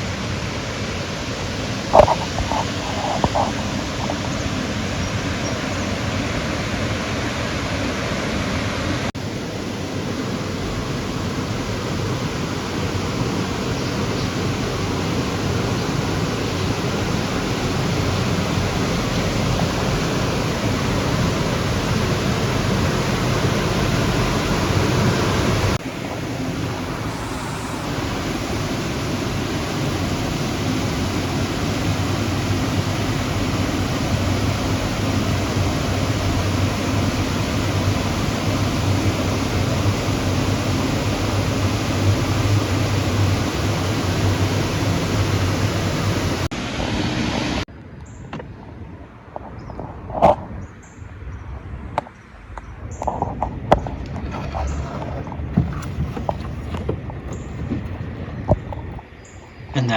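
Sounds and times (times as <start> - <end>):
rushing water pouring: 10.0 - 47.6.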